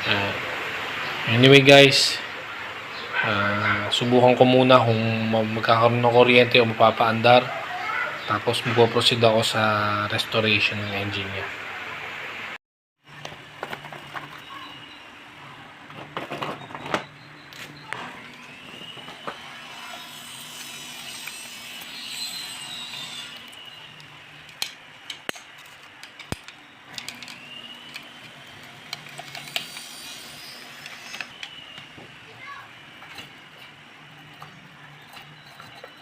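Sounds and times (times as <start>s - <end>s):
hand tools clicking on metal: 23.2s - 31.9s, 33.0s - 36.0s.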